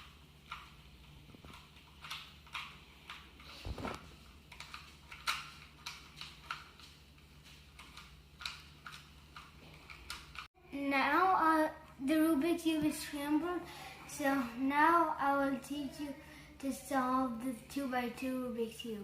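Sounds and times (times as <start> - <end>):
puzzle cube plastic clicks: 4.5 - 10.4.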